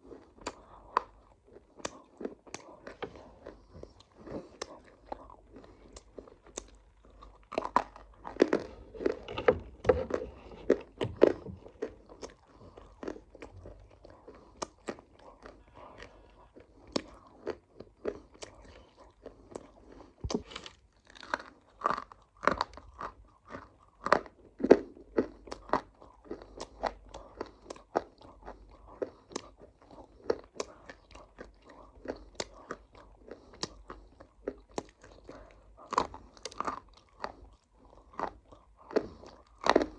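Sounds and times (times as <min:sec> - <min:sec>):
crunchy chewing and biting: 0:00.0 - 0:39.9.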